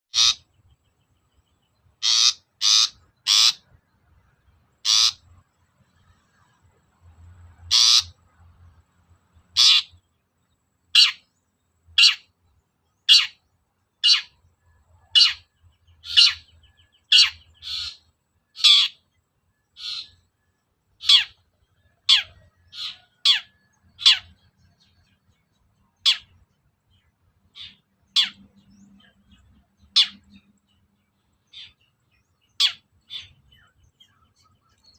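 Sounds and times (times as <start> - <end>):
shrike giving harsh calls: 2.0 - 3.6, 4.8 - 5.2.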